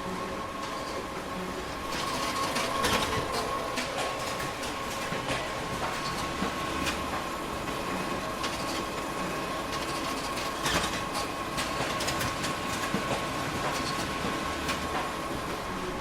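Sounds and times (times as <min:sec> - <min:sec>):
photocopier whirring: 0:00.2 - 0:12.8
paper handling clicks and clacks: 0:09.7 - 0:15.1.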